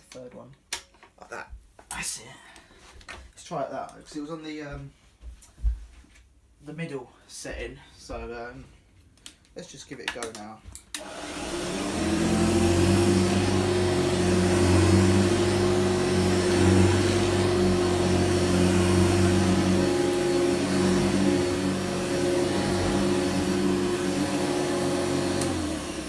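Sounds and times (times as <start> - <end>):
upright vacuum cleaner running: 11.0 - 26.0.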